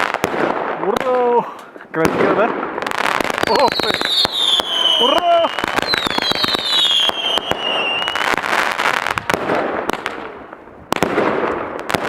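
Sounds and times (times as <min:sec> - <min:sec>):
firework shots and bursts: 0:00.0 - 0:01.2, 0:02.0 - 0:12.0
high falling firework whistle: 0:03.5 - 0:08.4.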